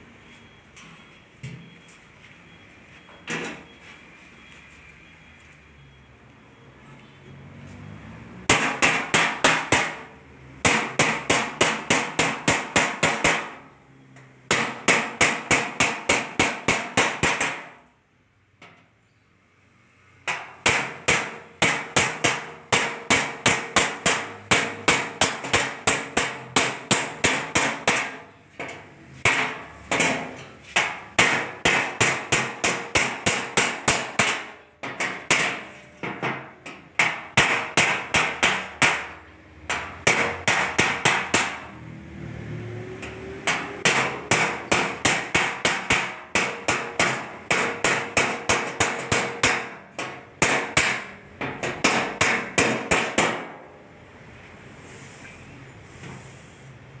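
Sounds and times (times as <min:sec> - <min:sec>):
hammer on sheet metal: 0:08.4 - 0:17.9, 0:20.2 - 0:41.9, 0:42.8 - 0:54.0.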